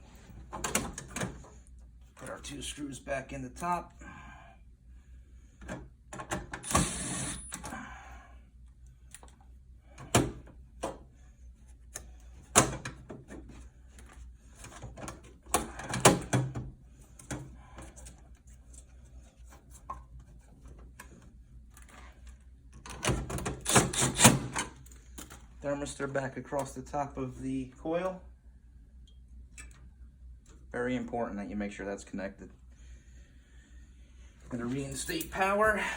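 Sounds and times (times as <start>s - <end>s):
screws driven into sheet metal: 6.6s - 7.5s, 23.6s - 24.6s.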